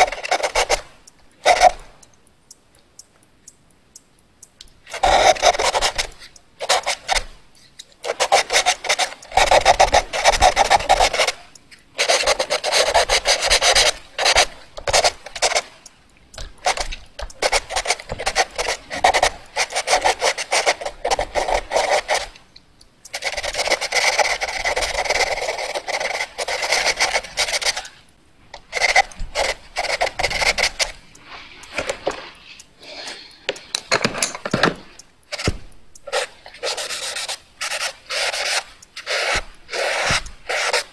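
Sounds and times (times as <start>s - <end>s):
pencil scratching on paper: 0.0s - 1.8s, 4.9s - 7.3s, 8.0s - 15.7s, 16.4s - 22.4s, 23.1s - 28.0s, 28.7s - 40.9s.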